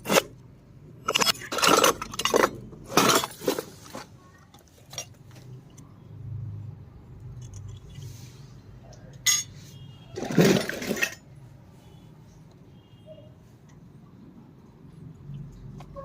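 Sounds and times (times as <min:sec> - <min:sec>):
toy kitchenware rattling: 0:01.0 - 0:05.2, 0:10.2 - 0:11.3
toy kitchenware clinking: 0:01.0 - 0:05.3, 0:10.2 - 0:11.3.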